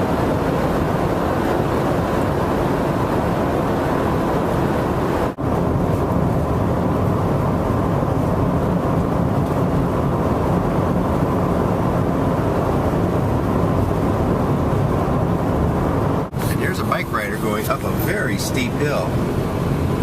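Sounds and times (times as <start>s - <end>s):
car road and engine noise: 0.0s - 20.0s.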